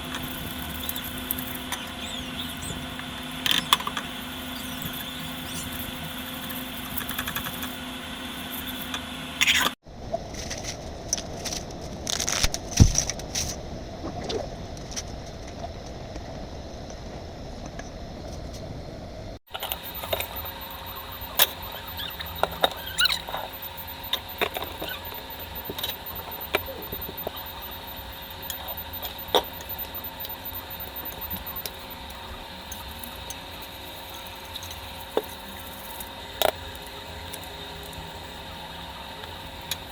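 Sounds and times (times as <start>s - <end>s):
steady background hum: 0.0s - 39.9s.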